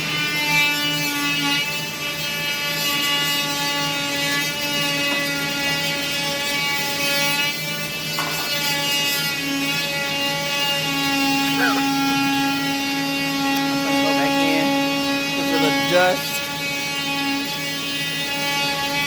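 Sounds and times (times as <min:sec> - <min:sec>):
power tool cutting drywall: 0:00.0 - 0:19.0.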